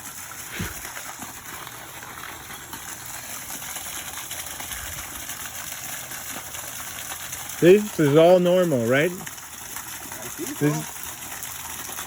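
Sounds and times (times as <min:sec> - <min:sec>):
water gushing from pipe: 0:00.0 - 0:12.0.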